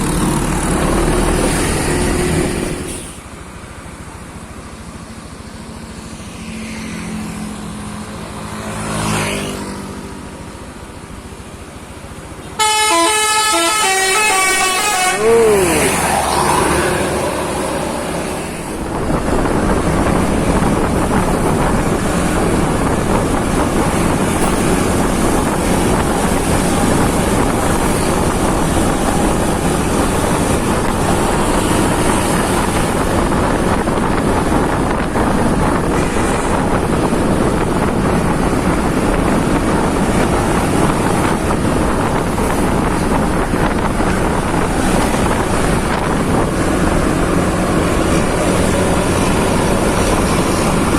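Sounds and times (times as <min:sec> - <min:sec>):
vehicle rumble: 0:00.0 - 0:50.9
wind buffeting microphone: 0:16.9 - 0:50.9.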